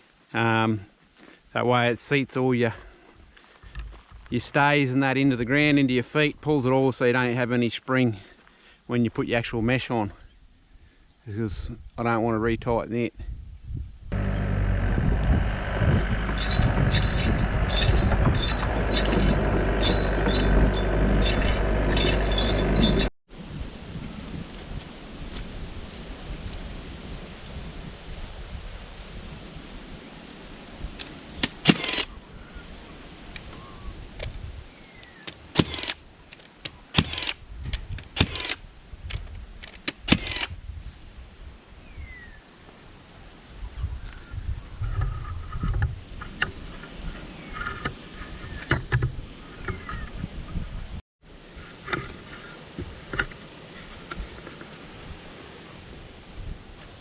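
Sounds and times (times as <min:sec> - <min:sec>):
excavator diesel engine running: 0:14.2 - 0:23.1
short high squeaks: 0:14.2 - 0:23.1
stapler firing shots: 0:31.4 - 0:32.1, 0:35.5 - 0:36.0, 0:37.0 - 0:37.4, 0:38.2 - 0:38.6, 0:39.9 - 0:40.5.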